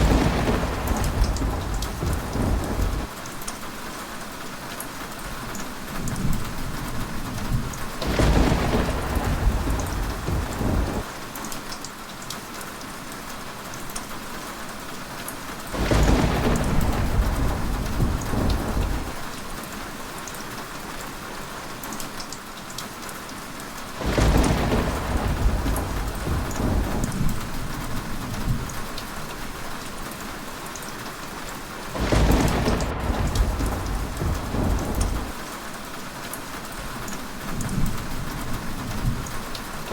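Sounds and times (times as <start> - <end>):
thunder rumbling: 0.0 - 3.1, 6.2 - 11.1, 15.8 - 19.6, 24.0 - 30.2, 31.9 - 35.7, 36.8 - 39.9
heavy rain: 0.0 - 39.9.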